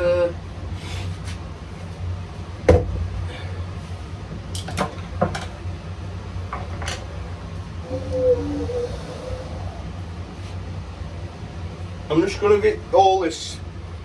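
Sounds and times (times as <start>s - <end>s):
steady low hum: 0.0s - 14.0s
tools knocking on workbench: 2.7s - 3.0s.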